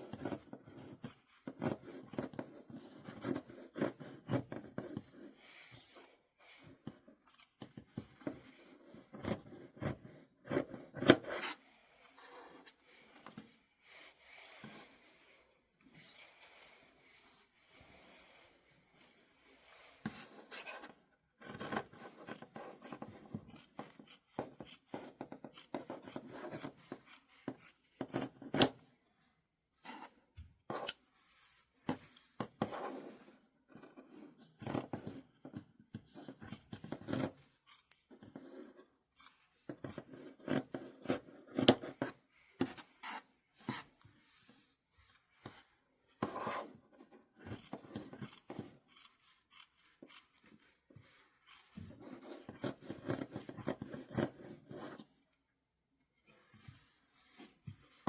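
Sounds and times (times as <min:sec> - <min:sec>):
scissors snipping fabric: 0:21.4 - 0:28.8, 0:36.1 - 0:38.4, 0:47.4 - 0:55.0.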